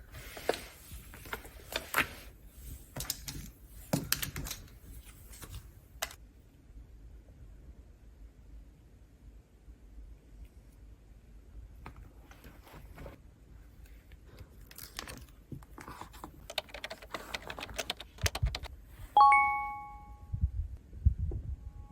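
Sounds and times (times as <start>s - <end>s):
bright bell-like chime: 19.2s - 20.3s.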